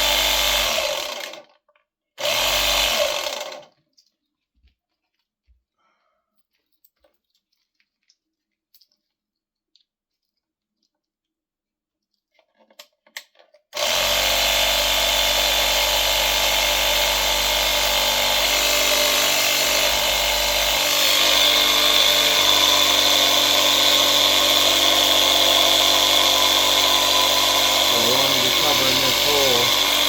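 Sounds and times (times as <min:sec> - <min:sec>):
electric air compressor running: 0:00.0 - 0:01.4, 0:02.2 - 0:03.6, 0:13.8 - 0:30.0.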